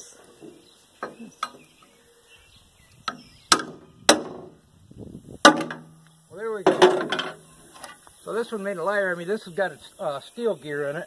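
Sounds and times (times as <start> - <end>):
hand tools clanking on metal: 5.4 - 6.0, 6.6 - 8.0.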